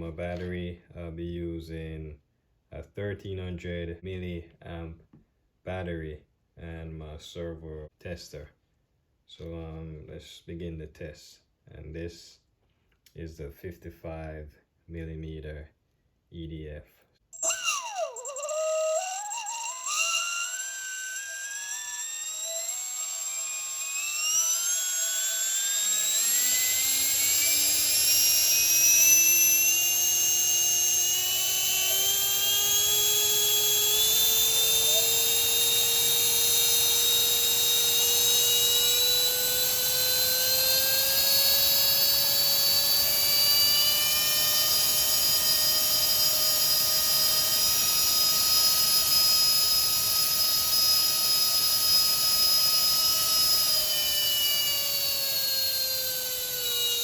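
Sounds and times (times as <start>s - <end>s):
electric fan high-pitched whine: 17.4s - 57.0s.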